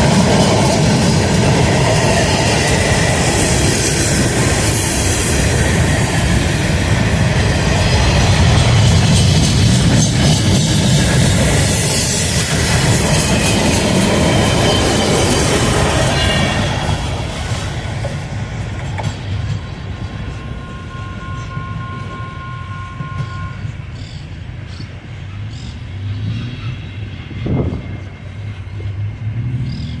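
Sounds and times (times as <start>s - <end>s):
freight train rolling on rails: 0.0s - 30.0s
faint steady squeal: 1.2s - 18.2s, 18.9s - 25.9s.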